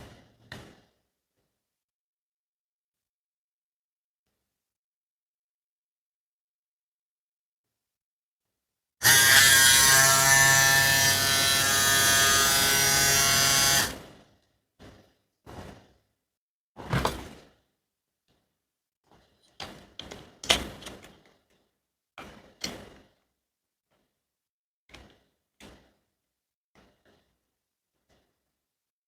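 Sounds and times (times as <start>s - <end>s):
hair trimmer buzzing: 9.0s - 13.9s.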